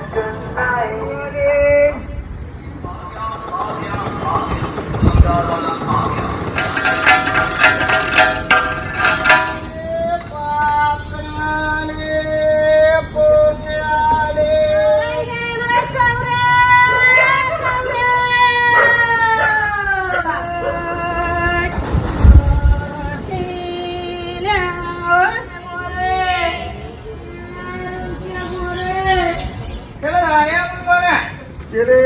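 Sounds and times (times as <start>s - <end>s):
low rumbling thumps: 1.9s - 9.8s
sharp rhythmic beats: 2.6s - 9.8s.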